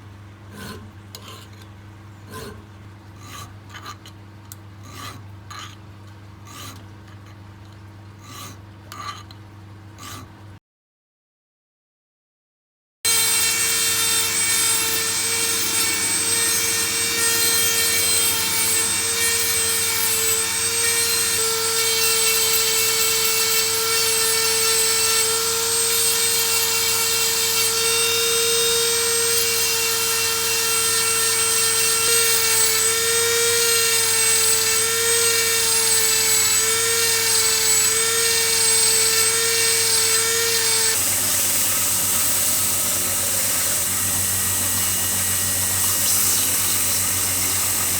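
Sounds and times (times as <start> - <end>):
steel grinding: 0.5 - 1.7, 2.3 - 2.6, 3.2 - 4.2, 4.8 - 5.8, 6.4 - 7.4, 8.2 - 9.4, 10.0 - 10.3, 13.1 - 47.9
power tool motor whining: 13.1 - 47.9.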